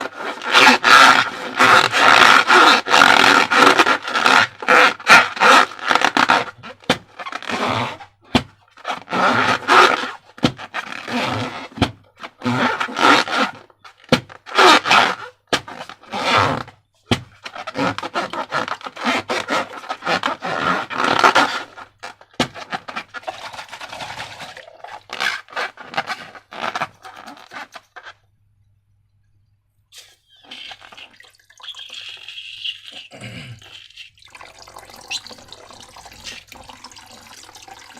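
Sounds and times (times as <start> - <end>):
rubbery scraping and squeaking: 0.0 - 28.3.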